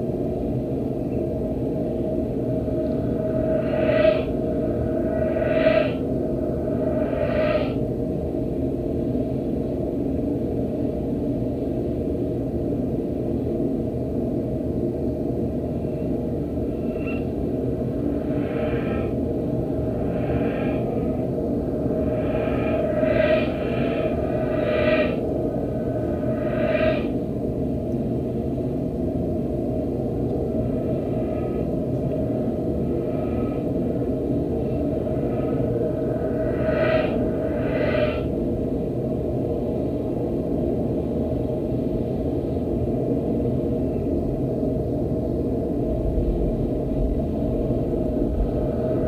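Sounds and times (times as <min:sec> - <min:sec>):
low rumbling tape noise: 0:01.5 - 0:09.2, 0:15.4 - 0:40.2
reversed crow call: 0:03.1 - 0:07.8, 0:17.9 - 0:27.2, 0:34.8 - 0:38.4
tape noise rumble: 0:16.7 - 0:28.1.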